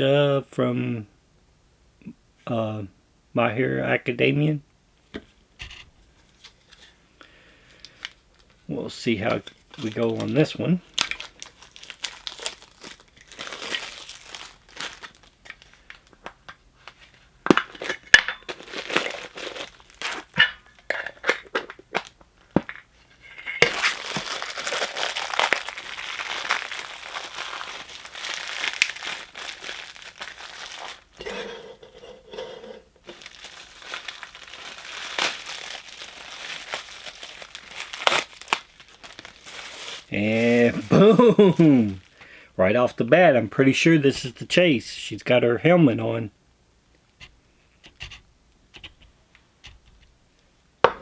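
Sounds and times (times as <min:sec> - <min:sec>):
plastic wrapping crinkling and tearing: 0:07.7 - 0:31.6, 0:33.0 - 0:42.2.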